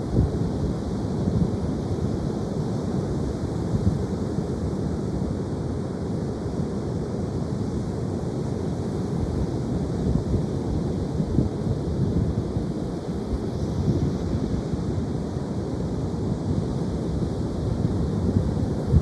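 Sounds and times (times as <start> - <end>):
wind buffeting microphone: 17.3 - 19.0.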